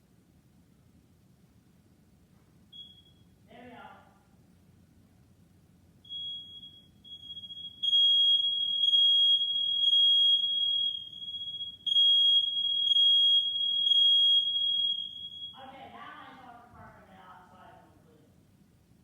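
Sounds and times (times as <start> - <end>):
smoke alarm high-pitched tone: 2.7 - 3.3, 6.0 - 15.7.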